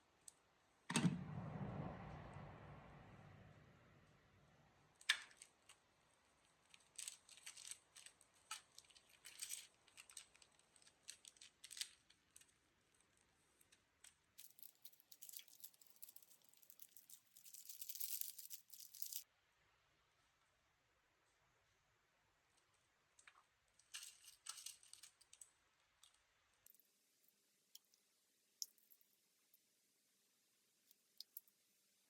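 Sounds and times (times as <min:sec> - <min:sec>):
packaging being handled: 0:06.7 - 0:12.5, 0:14.4 - 0:19.2
scratchy rustle: 0:14.4 - 0:19.2.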